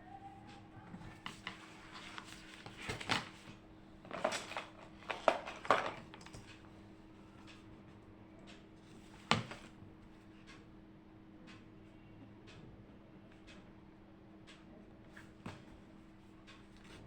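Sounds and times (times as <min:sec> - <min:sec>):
faint steady hum: 0:00.0 - 0:17.0
clattering knocks and rustles: 0:04.1 - 0:06.5.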